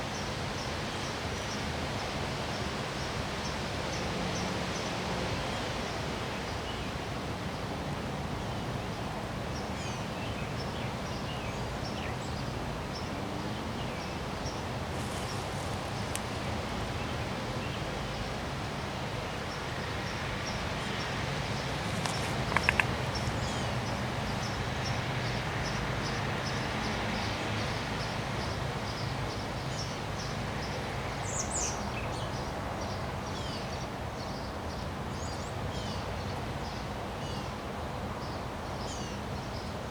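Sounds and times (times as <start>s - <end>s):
wind with rustling: 0.0s - 39.9s
birds chirping: 19.5s - 28.1s
sharp clicks: 21.8s - 23.5s.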